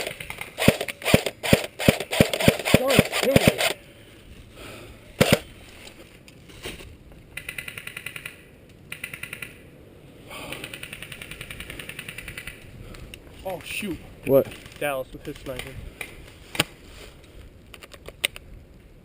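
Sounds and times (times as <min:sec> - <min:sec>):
airsoft gun firing: 0:00.0 - 0:03.8, 0:05.2 - 0:05.5.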